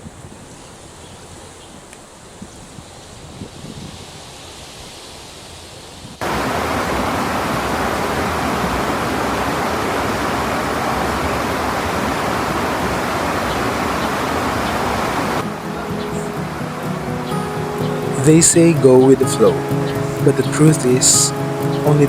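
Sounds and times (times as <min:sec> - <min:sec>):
outdoor hiss: 0:00.0 - 0:22.0
rushing river water: 0:00.0 - 0:22.0.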